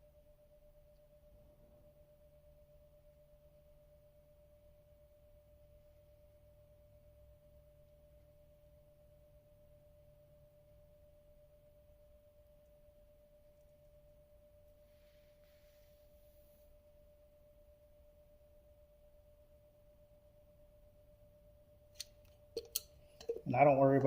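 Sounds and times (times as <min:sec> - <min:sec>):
faint steady pure tone: 0:00.0 - 0:24.0.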